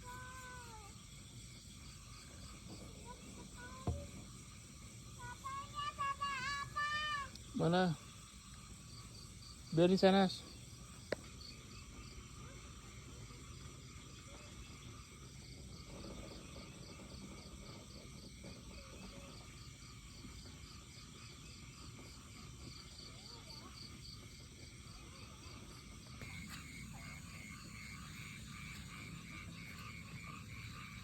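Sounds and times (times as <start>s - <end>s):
high pulsing insect call: 0.0s - 31.0s
lower pulsing frog call: 26.2s - 31.0s.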